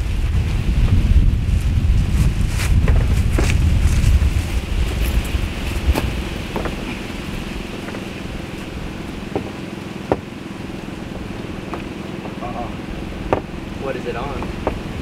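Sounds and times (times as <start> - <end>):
steady low hum: 0.0 - 15.0
wind buffeting microphone: 0.0 - 15.0
sharp knocks: 5.9 - 7.0, 9.3 - 10.4, 11.6 - 12.4, 13.2 - 13.6, 14.3 - 14.9.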